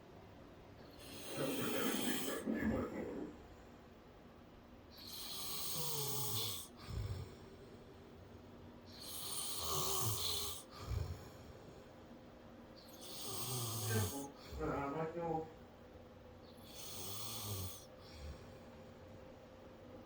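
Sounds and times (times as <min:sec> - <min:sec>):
man snoring: 0:01.0 - 0:02.4, 0:05.0 - 0:07.4, 0:09.0 - 0:11.4, 0:12.9 - 0:14.9, 0:16.6 - 0:18.5.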